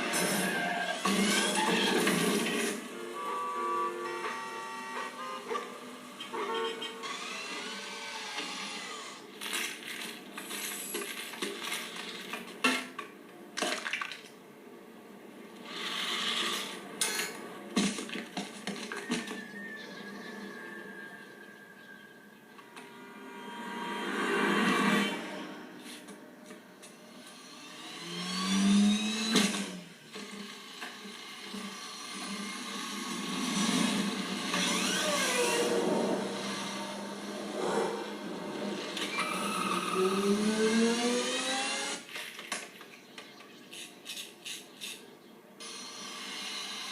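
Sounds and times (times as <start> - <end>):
vehicle noise: 0.0 - 13.4, 14.6 - 45.5
high whining small motor: 2.9 - 9.8, 26.9 - 37.8, 38.4 - 42.1, 45.6 - 46.9
swooping whines: 18.8 - 26.4.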